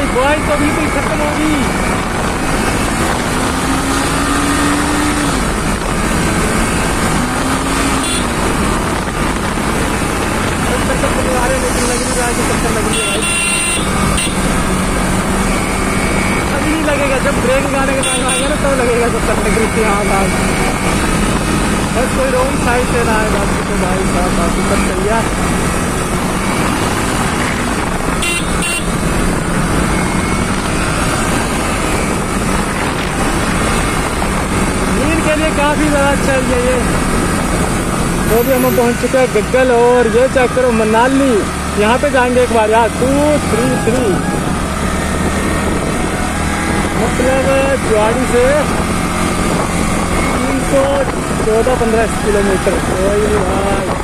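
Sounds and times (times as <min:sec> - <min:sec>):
wind rush on microphone: 0:00.0 - 0:40.6, 0:41.2 - 0:54.0
motorcycle engine running: 0:00.0 - 0:54.0
horn beeps: 0:12.8 - 0:14.6, 0:28.1 - 0:29.0.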